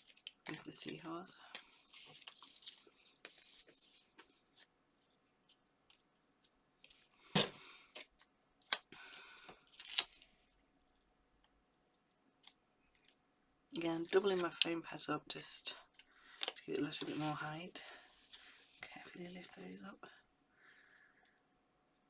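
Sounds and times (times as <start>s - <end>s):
paper and card rustling: 0.0s - 4.7s, 13.9s - 14.7s, 16.4s - 17.5s.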